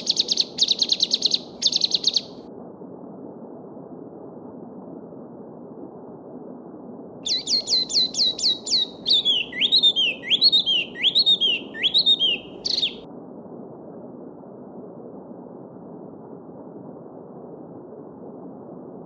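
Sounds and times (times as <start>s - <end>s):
songbird singing: 0.0s - 2.4s, 7.2s - 13.1s
babbling stream: 7.3s - 13.0s.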